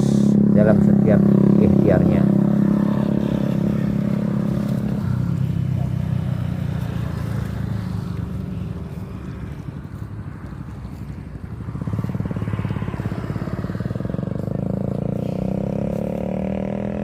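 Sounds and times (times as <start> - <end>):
small engine running: 5.6 - 16.3.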